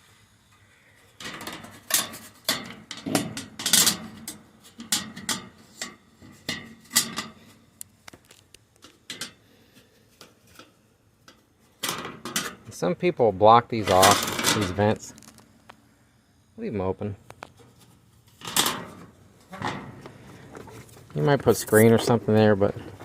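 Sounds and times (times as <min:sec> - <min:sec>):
hard objects clattering and knocking: 0:01.2 - 0:07.5.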